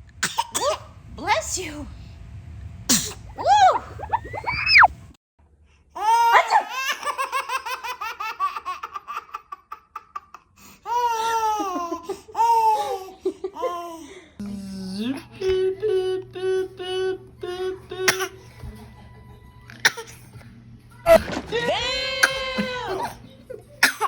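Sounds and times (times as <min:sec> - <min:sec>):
baby laughing: 0:06.0 - 0:14.0.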